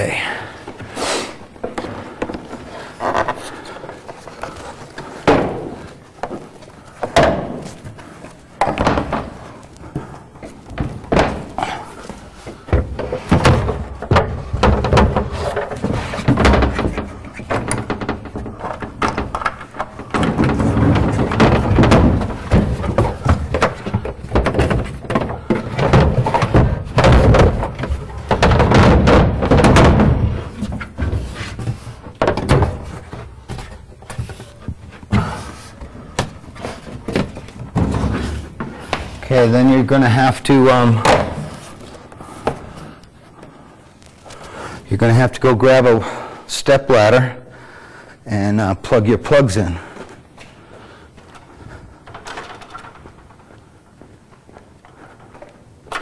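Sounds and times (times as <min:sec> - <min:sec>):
wooden thuds and knocks: 0:01.5 - 0:43.6.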